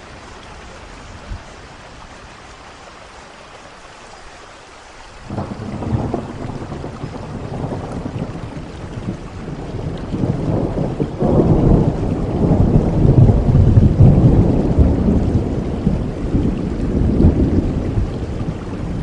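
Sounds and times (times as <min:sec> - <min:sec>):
steady rain: 0:00.0 - 0:19.0
rolling thunder rumble: 0:05.3 - 0:19.0.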